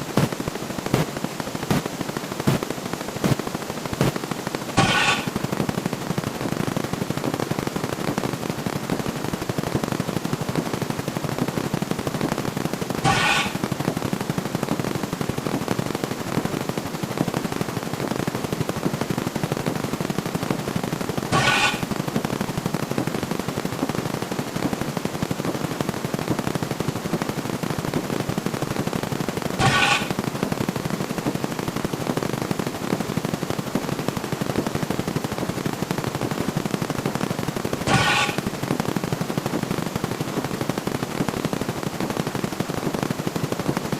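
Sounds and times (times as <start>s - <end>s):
rapid counting sound effects rattle: 4.8s - 6.2s, 11.1s - 14.4s, 21.1s - 22.3s, 29.4s - 30.3s, 37.8s - 38.6s.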